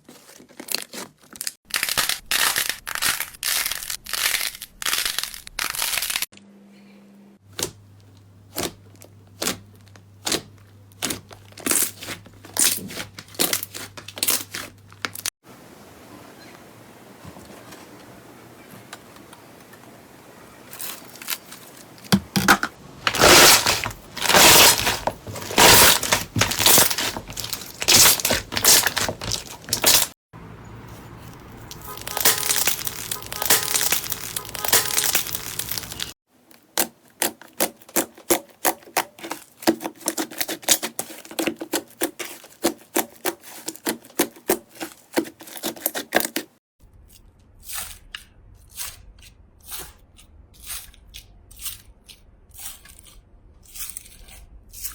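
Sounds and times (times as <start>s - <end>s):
slime crackling and popping: 0.6s - 6.3s, 23.0s - 30.1s, 31.6s - 36.2s.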